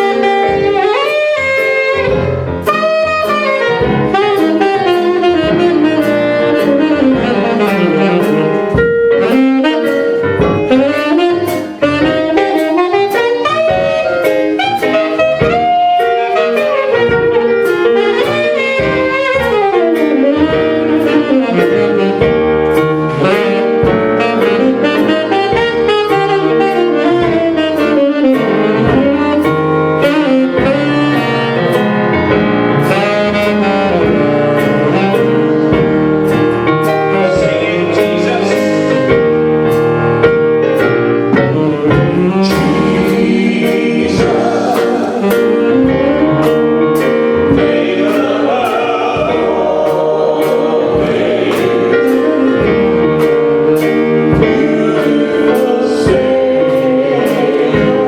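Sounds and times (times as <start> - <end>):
accompaniment with steady beat: 0.0 - 58.0
saxophone melody: 0.0 - 58.0.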